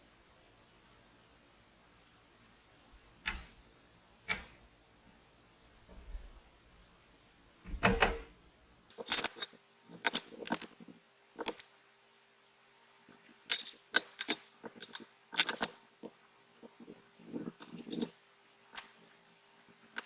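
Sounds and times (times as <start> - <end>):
tweezers clicking on glass: 8.9 - 10.8, 11.4 - 11.7, 13.5 - 19.0.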